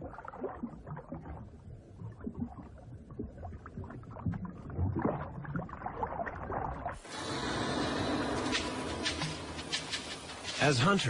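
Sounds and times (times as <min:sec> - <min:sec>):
water sloshing and splashing: 0:00.0 - 0:10.7
steady hiss: 0:07.0 - 0:11.0.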